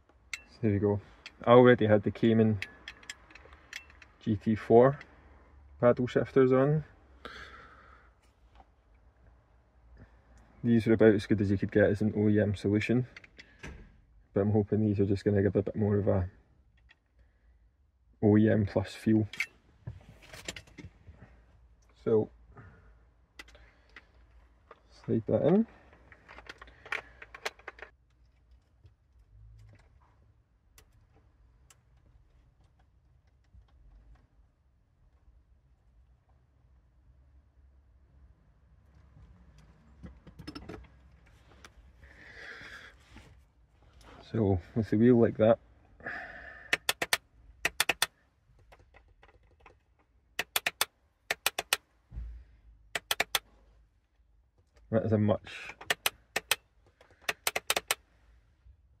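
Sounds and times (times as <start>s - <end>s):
small hard parts clicking: 2.6s - 4.2s, 25.5s - 29.0s, 46.6s - 51.8s, 52.9s - 53.4s, 55.6s - 58.0s
paddle shifter clicks: 46.7s - 48.1s, 50.4s - 51.8s, 53.0s - 53.4s, 55.7s - 56.6s, 57.2s - 58.0s.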